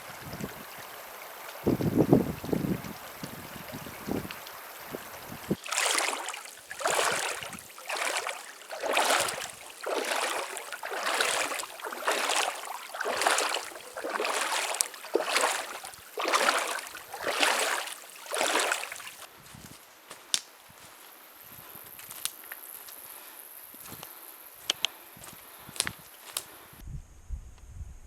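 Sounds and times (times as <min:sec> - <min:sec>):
wading splashes in river: 0:00.0 - 0:19.3.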